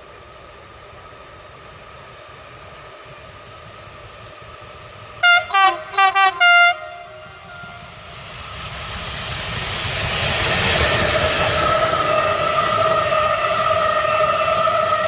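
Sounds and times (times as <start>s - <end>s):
approaching train rumble: 0.0s - 15.0s
train horn blasts: 5.2s - 8.2s.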